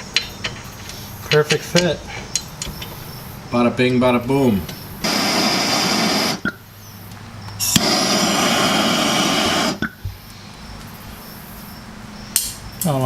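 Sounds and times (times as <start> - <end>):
aerosol spray can hissing: 5.0 - 6.5, 7.6 - 9.9
sharp click: 12.3 - 12.9.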